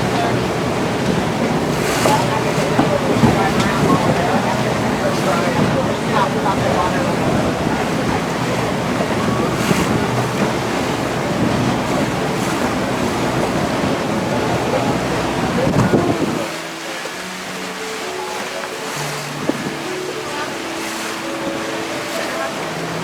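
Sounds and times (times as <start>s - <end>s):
wind noise: 0.0s - 16.5s
boat engine: 0.0s - 23.0s
water rushing: 0.0s - 23.0s.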